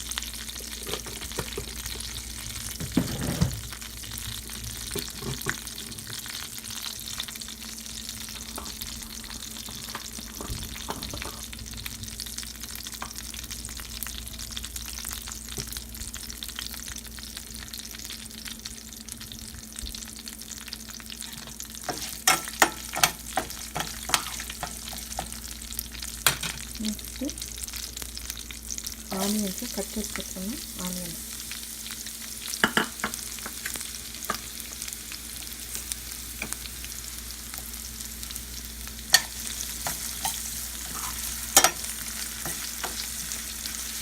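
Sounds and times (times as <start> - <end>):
spices sizzling in hot oil: 0.0 - 44.0.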